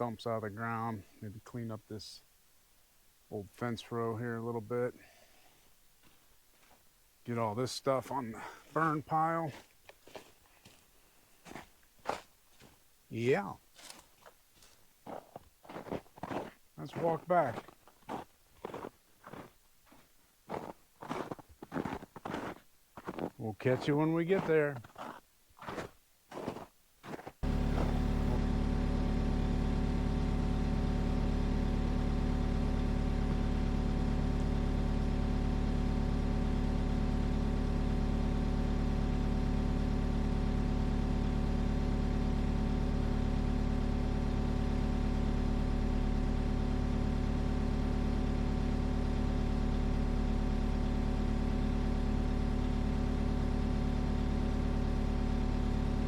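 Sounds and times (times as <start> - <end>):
engine running steadily: 27.4 - 56.0.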